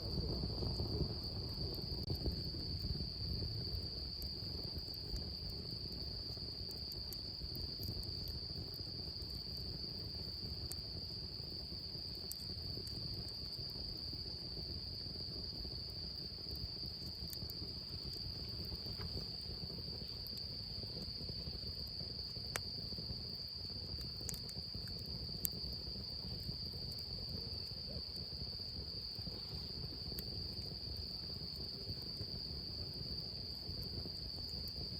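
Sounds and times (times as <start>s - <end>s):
campfire popping and crackling: 0.0s - 34.9s
crickets trilling: 0.0s - 34.9s.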